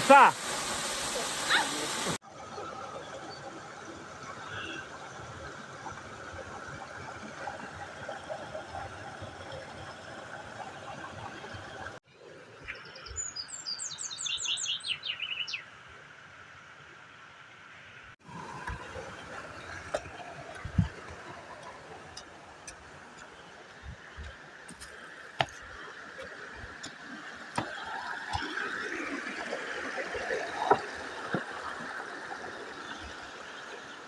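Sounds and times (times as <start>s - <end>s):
outdoor hiss: 0.0s - 2.2s
songbird singing: 12.7s - 15.7s.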